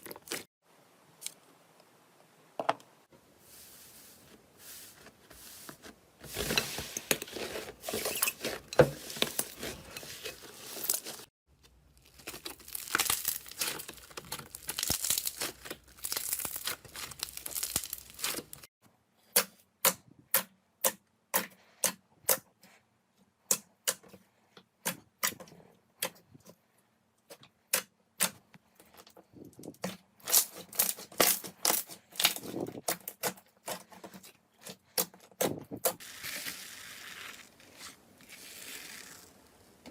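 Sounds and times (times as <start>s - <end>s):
slime crackling: 12.0s - 18.7s.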